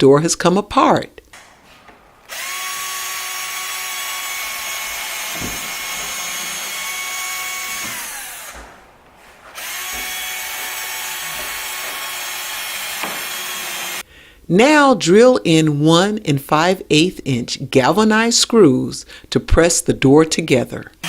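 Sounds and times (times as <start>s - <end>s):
power drill boring into wood: 1.4s - 14.0s.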